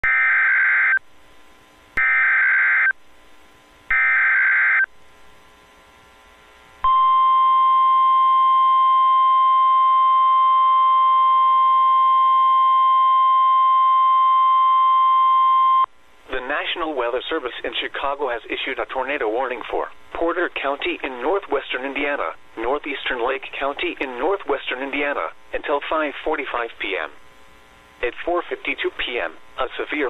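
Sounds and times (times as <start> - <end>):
steady warning alarm tone: 0.0 - 1.0, 2.0 - 3.0, 3.9 - 4.9.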